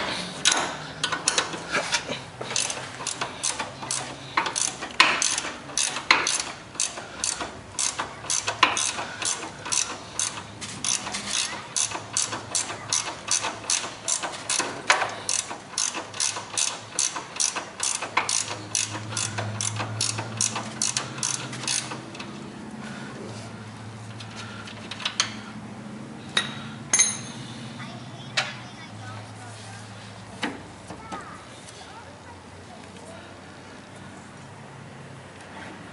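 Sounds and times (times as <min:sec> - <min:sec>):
ratchet wrench clicking: 0:00.4 - 0:22.3.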